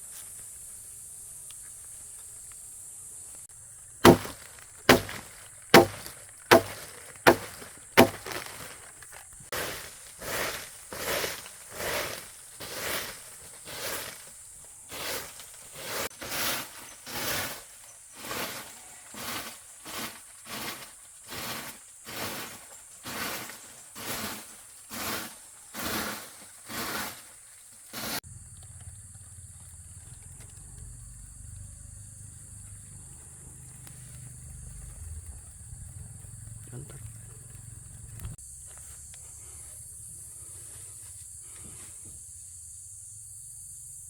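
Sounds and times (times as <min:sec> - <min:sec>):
sharp chopping blows: 0:04.0 - 0:08.8
hand tool rasping strokes: 0:04.0 - 0:28.2.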